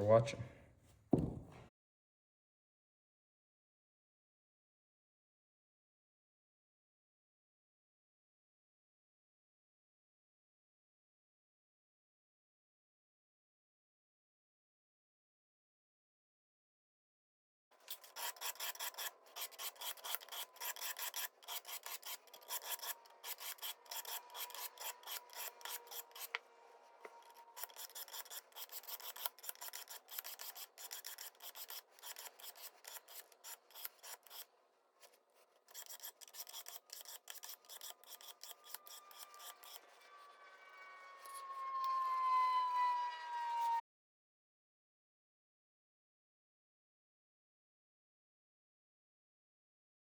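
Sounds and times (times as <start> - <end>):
knife rasping on sharpening stone: 17.8 - 26.4, 27.0 - 34.5, 35.7 - 40.2.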